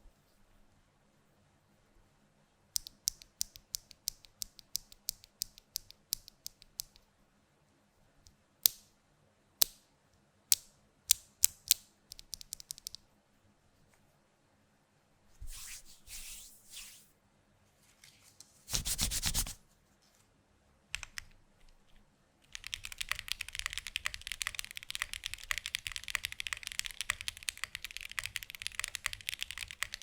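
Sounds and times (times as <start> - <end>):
mechanical keyboard typing: 12.1 - 13.0, 21.0 - 21.4, 22.5 - 30.0.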